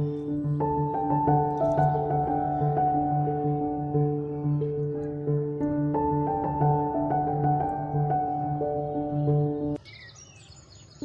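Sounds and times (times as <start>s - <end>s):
soft background music: 0.0s - 9.8s
high bird chirp: 8.2s - 11.0s.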